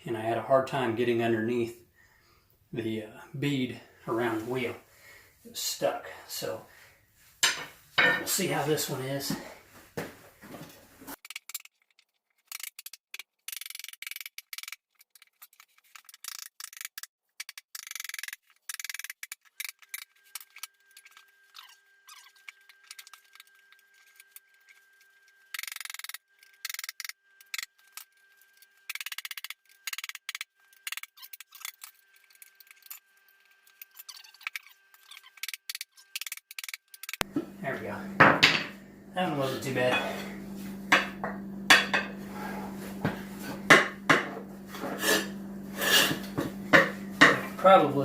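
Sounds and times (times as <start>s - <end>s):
pry bars scraping metal rim: 44.7s - 46.3s.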